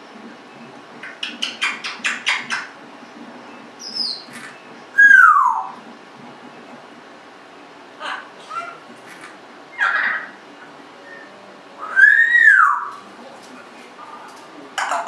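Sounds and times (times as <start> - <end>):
parrot whistling: 5.0 - 5.8, 11.0 - 13.0.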